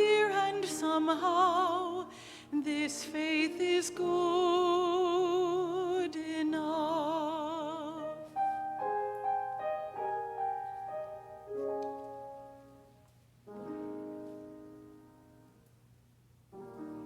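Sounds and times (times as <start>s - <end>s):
piano playing notes and chords: 7.7s - 15.7s, 16.5s - 17.0s.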